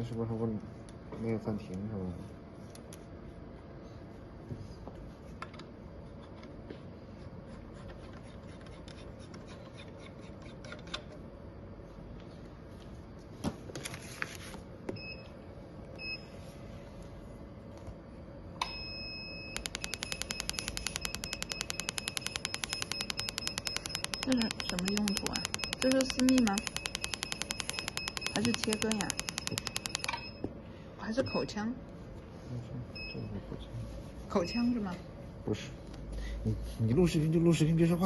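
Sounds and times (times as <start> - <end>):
laser unit humming: 18.2 - 31.8
held tone: 18.6 - 30.5
short beeps: 18.6 - 30.5
rapid string of beeps: 19.0 - 30.4
scattered clicks: 19.5 - 30.3.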